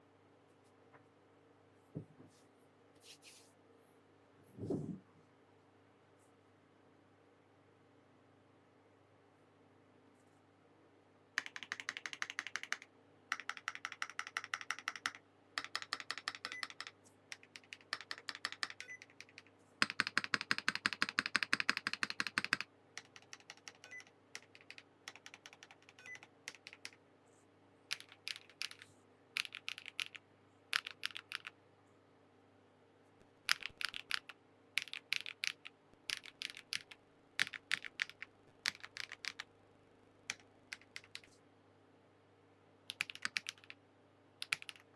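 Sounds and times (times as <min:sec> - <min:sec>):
mechanical keyboard typing: 0:11.4 - 0:27.0, 0:27.9 - 0:31.6, 0:33.4 - 0:39.5, 0:40.3 - 0:41.3, 0:42.9 - 0:43.8, 0:44.4 - 0:44.9.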